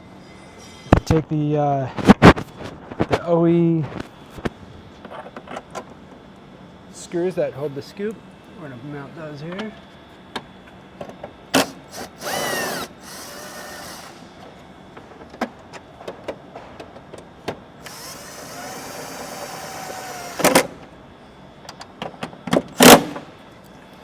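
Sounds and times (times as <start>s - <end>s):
cordless drill driving screws: 11.6s - 14.3s, 17.8s - 20.7s.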